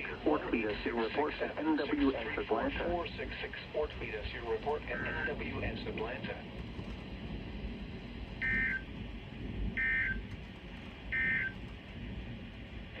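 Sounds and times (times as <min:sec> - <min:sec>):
radio hiss: 0:00.0 - 0:07.1
digital data tone bursts: 0:11.2 - 0:11.6.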